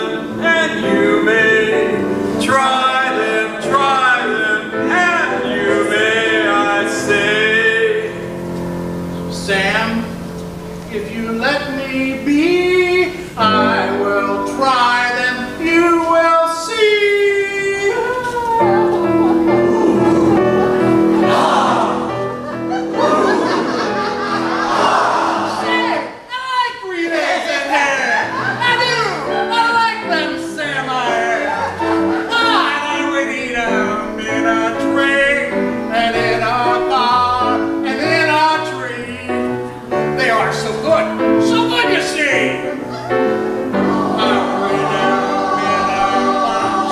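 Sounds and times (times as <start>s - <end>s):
men singing a duet: 0.0s - 8.4s, 10.9s - 26.0s, 26.9s - 46.9s
instrumental accompaniment: 17.4s - 26.0s, 28.2s - 46.9s.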